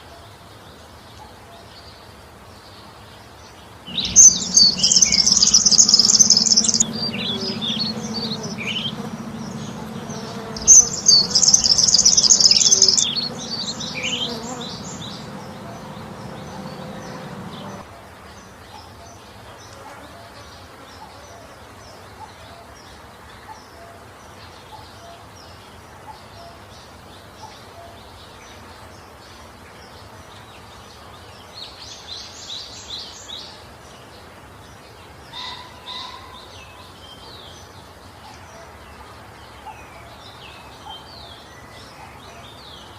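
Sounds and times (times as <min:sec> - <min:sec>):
low steady hum: 0:03.9 - 0:18.0
small birds twittering: 0:03.9 - 0:19.7.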